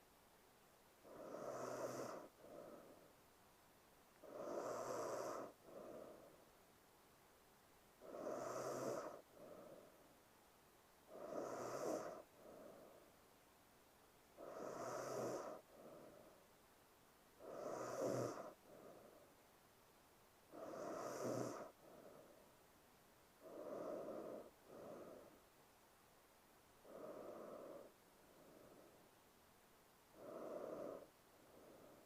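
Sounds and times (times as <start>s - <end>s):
woman snoring: 1.0s - 3.0s, 4.2s - 6.3s, 8.0s - 10.0s, 11.1s - 13.0s, 14.4s - 16.2s, 17.4s - 19.1s, 20.5s - 22.3s, 23.4s - 25.4s, 26.8s - 28.9s, 30.1s - 32.0s.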